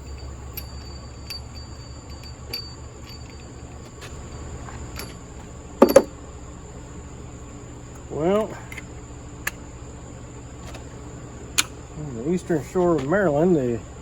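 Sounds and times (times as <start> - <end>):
metal tools ticking and clicking: 0.0 - 5.2, 5.8 - 6.1
sharp metallic clinks: 0.0 - 6.1
insects chirping: 0.0 - 14.0
steady low hum: 0.0 - 14.0.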